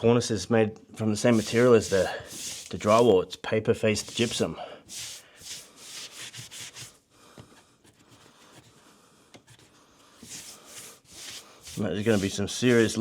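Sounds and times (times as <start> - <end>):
hand sanding rubbing strokes: 1.3 - 3.1, 4.0 - 7.0, 10.2 - 13.0.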